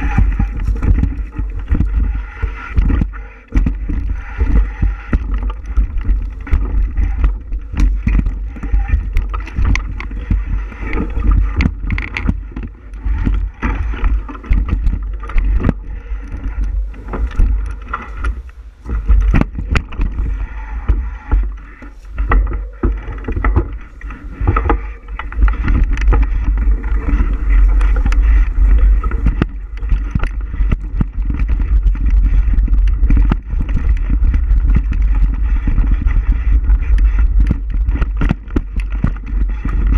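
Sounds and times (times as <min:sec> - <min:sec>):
bicycle rattling clicks and knocks: 0:00.0 - 0:39.9
wind buffeting microphone: 0:00.0 - 0:39.9.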